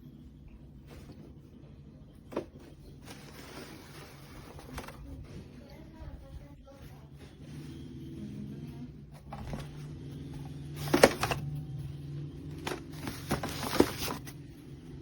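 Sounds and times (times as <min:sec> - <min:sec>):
fabric bag rustling: 0:12.6 - 0:14.4.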